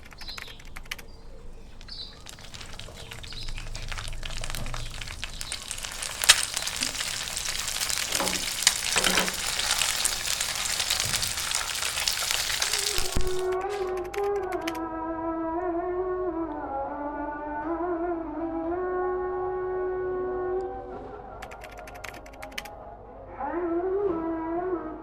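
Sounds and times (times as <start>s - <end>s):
food sizzling in a pan: 2.0s - 13.5s
music: 13.6s - 25.0s.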